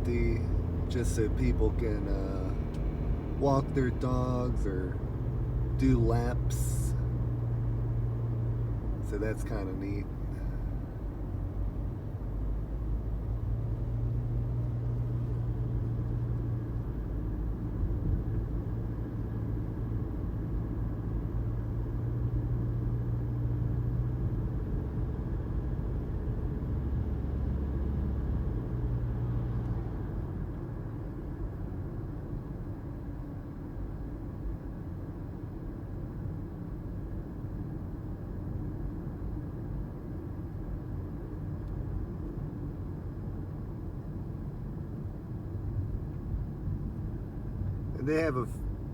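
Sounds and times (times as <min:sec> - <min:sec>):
car road noise rumble: 0:00.0 - 0:48.9.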